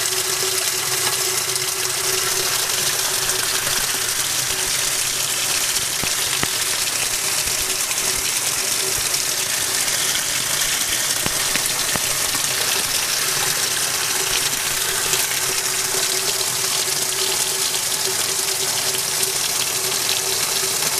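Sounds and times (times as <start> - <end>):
water rushing in washing machine: 0.0 - 20.9
motor humming: 2.1 - 16.2.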